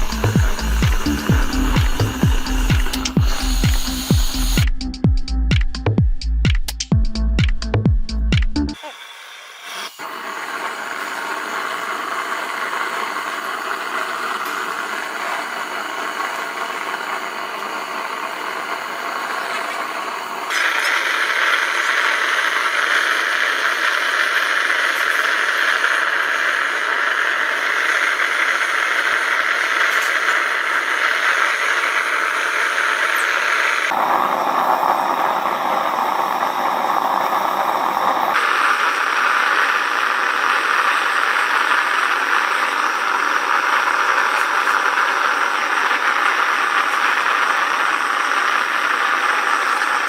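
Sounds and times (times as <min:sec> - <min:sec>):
mechanical rushing noise: 0:00.0 - 0:04.9.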